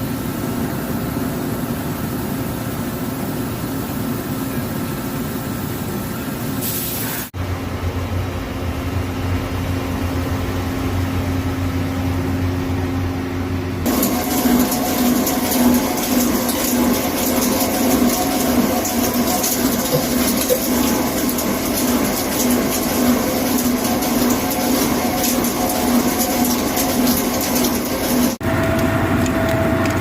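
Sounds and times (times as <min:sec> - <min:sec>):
rushing hiss of coolant: 0:06.6 - 0:07.4
lathe mechanical hum: 0:07.3 - 0:30.0.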